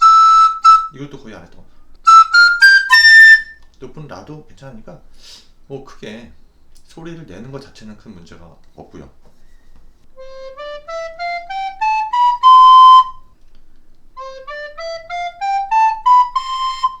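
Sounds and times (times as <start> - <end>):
recorder playing a scale: 0.0 - 0.9, 2.1 - 3.6, 10.2 - 13.3, 14.2 - 17.0.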